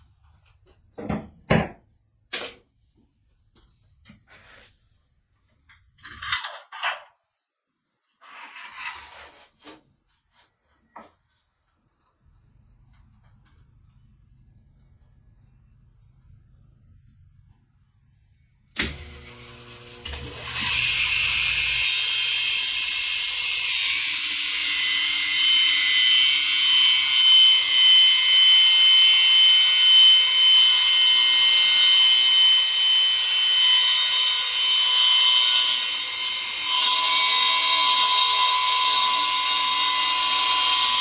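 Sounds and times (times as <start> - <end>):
power tool high-pitched whine: 18.8 - 41.0.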